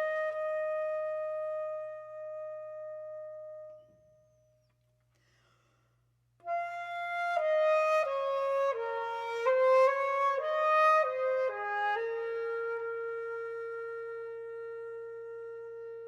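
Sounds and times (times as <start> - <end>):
solo flute: 0.0 - 4.7, 6.4 - 16.0.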